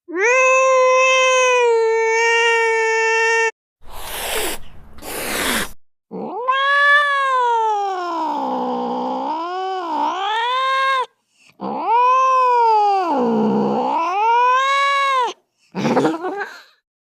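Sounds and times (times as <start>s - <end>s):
cat yowling: 0.1s - 15.4s.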